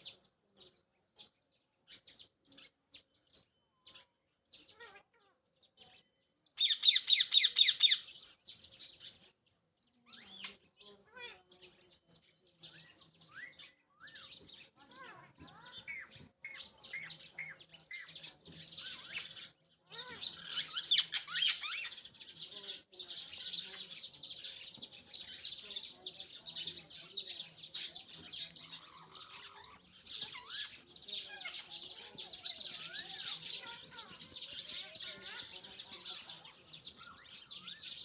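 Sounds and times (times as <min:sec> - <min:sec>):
parakeets chirping and chattering: 0:06.6 - 0:09.2, 0:12.6 - 0:38.0.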